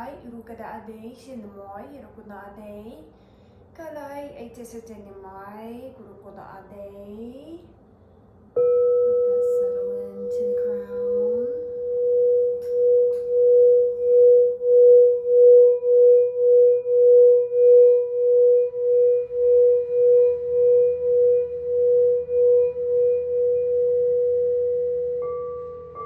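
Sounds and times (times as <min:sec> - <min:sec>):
singing bowl sustained tone: 0:07.2 - 0:26.0
higher-pitched singing bowl: 0:08.6 - 0:26.0.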